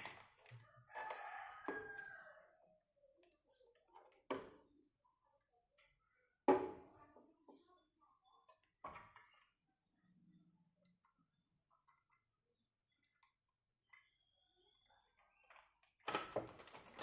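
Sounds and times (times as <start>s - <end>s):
rooster crowing: 0.6s - 2.5s.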